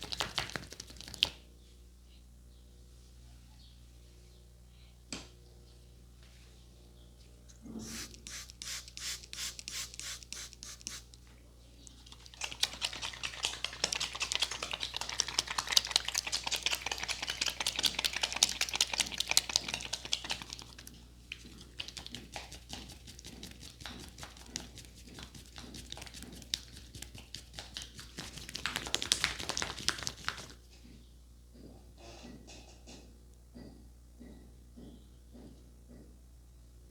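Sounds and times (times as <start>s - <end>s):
hands slapping in head massage: 0.0s - 1.4s, 22.4s - 30.6s.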